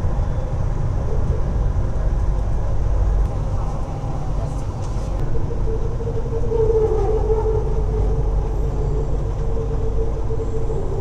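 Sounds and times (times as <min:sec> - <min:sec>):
train rumbling: 0:00.0 - 0:11.0
humming tone: 0:03.2 - 0:11.0.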